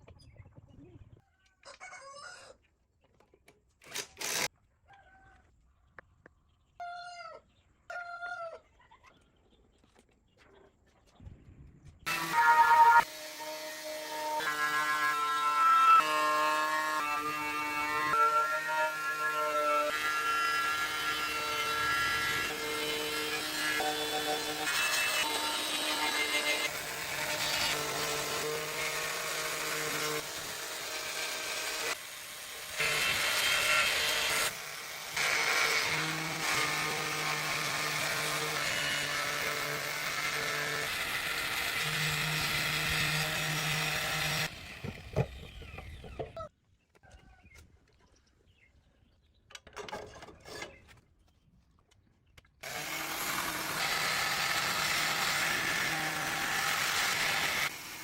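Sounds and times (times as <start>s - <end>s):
power tool running: 3.9s - 4.5s, 12.1s - 46.1s, 52.6s - 58.0s.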